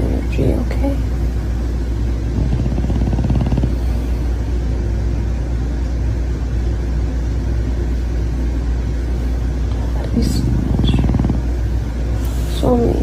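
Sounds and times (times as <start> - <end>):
steady low rumble: 0.0 - 13.0
dog snoring: 2.2 - 4.3, 10.1 - 11.9.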